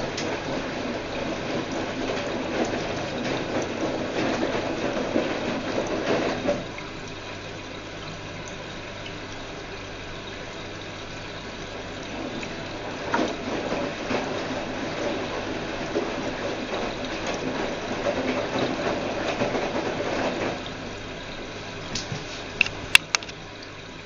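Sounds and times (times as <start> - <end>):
washing machine low hum: 0.0 - 24.0
water sloshing in washing machine: 0.0 - 24.0.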